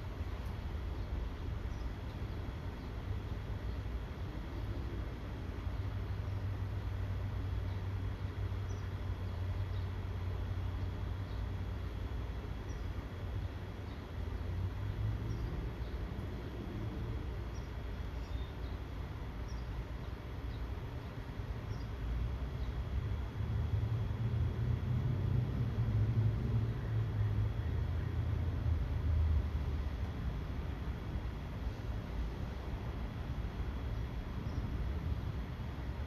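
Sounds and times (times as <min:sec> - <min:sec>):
small birds chirping: 0:00.3 - 0:04.8, 0:05.8 - 0:06.9, 0:07.5 - 0:16.6, 0:17.4 - 0:23.3.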